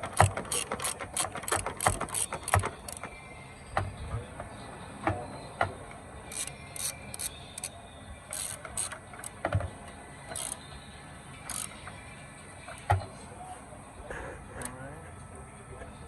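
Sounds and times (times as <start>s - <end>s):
ratchet wrench clicking: 0.0s - 3.1s, 6.3s - 7.7s, 8.3s - 9.4s, 10.3s - 10.6s, 11.5s - 11.8s.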